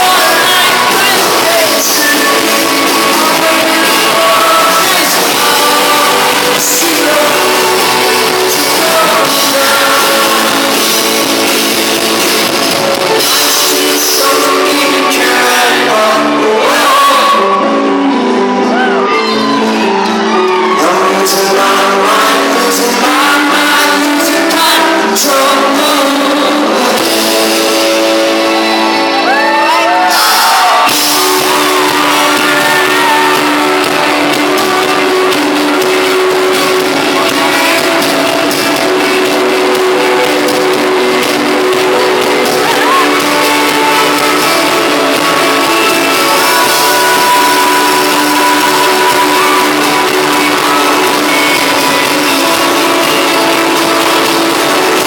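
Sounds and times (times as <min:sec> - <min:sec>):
bass guitar: 0:00.0 - 0:55.0
person singing: 0:00.0 - 0:55.0
rock band playing live: 0:00.0 - 0:55.0.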